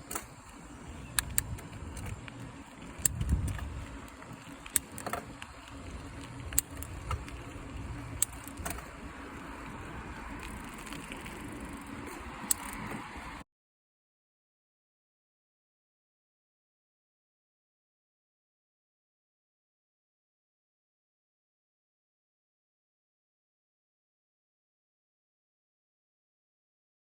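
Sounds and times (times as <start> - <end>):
bike shifter clicking: 0.0 - 9.1, 10.4 - 13.1
low steady rumble: 0.0 - 13.4.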